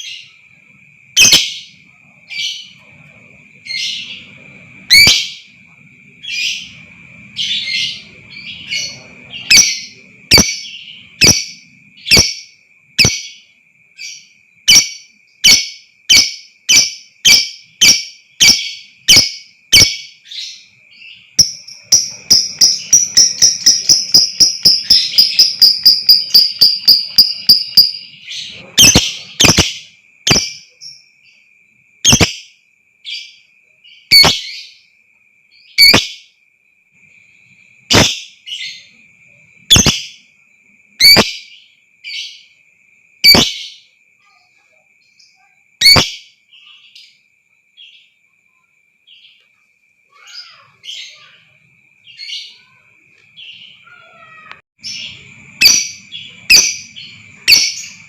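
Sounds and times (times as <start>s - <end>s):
faint steady high tone: 0.0s - 58.0s
lovebird calling and trilling: 1.2s - 5.6s, 6.2s - 31.1s, 32.0s - 32.5s, 33.1s - 34.8s, 35.6s - 36.3s, 37.8s - 39.0s, 39.6s - 40.3s, 41.0s - 42.5s, 43.2s - 43.9s, 45.2s - 47.2s, 50.1s - 51.4s, 53.4s - 58.0s.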